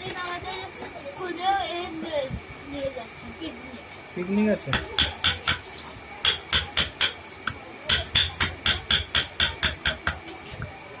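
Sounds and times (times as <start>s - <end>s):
hammer striking wood: 4.7s - 10.3s.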